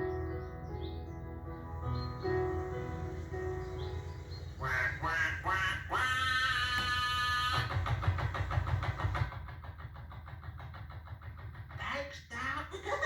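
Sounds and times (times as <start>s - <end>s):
boat engine chugging: 1.6s - 13.0s.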